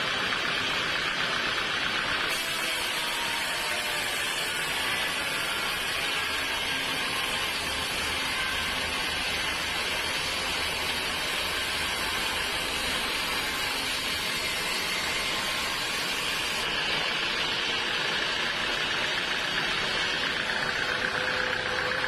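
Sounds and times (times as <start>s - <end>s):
sawmill machinery running: 0.0s - 22.0s.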